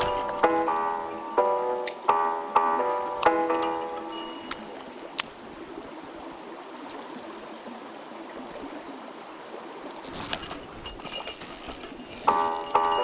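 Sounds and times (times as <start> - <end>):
background music: 0.0 - 4.8, 12.3 - 13.0
stream rushing water: 0.0 - 13.0.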